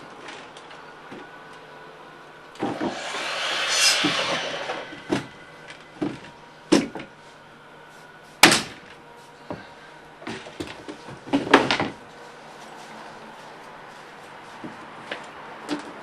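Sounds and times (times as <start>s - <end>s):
rushing hiss: 2.6s - 6.3s.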